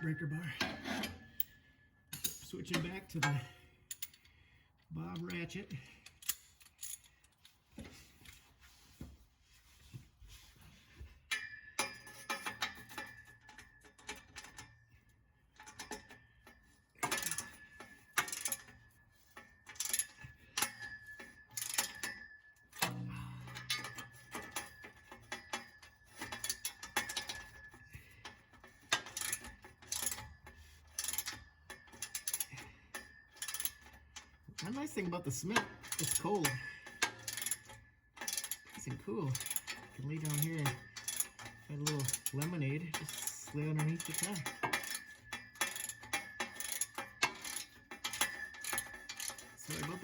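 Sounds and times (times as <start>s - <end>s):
tools clinking on metal: 0.0s - 4.3s, 11.3s - 14.8s, 15.6s - 50.0s
ratchet wrench clicking: 28.9s - 30.3s, 31.0s - 31.4s, 35.9s - 49.9s.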